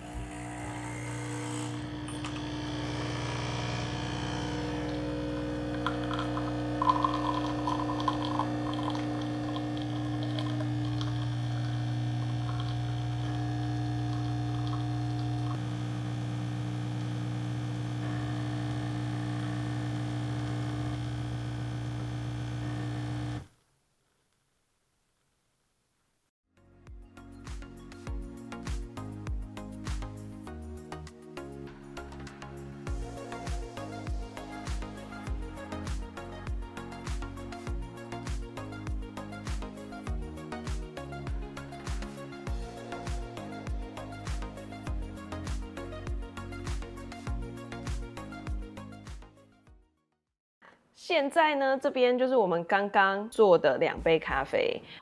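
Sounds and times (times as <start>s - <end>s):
coffee machine humming: 0.0s - 23.5s
coffee machine rattling: 5.7s - 13.4s.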